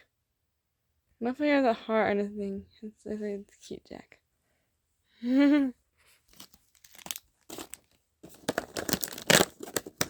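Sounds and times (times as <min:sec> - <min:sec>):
packaging crinkling and tearing: 0:06.3 - 0:10.0.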